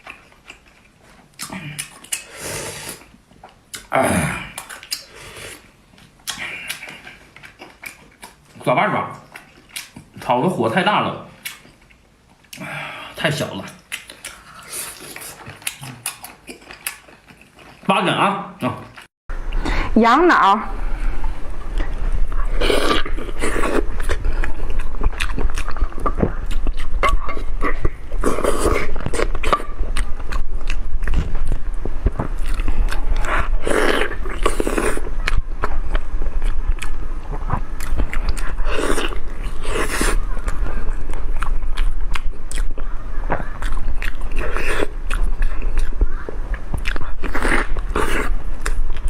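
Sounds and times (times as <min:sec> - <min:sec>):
person chewing food: 0:00.0 - 0:10.4, 0:11.4 - 0:17.9, 0:20.9 - 0:49.0
low steady hum: 0:18.6 - 0:49.0.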